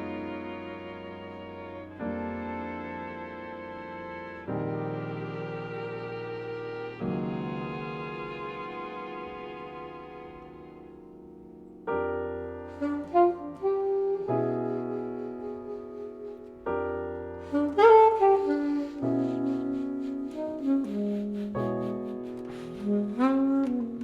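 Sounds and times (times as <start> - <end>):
alto saxophone: 0.0 - 11.1, 11.9 - 24.0
string trio: 0.0 - 11.2
piano chords: 0.0 - 24.0.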